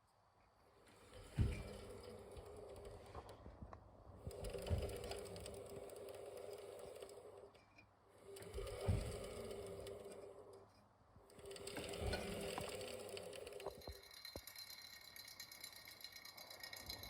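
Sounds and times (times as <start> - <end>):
washing machine motor hum: 0.7 - 17.0
fast bearing clicking: 11.3 - 17.0.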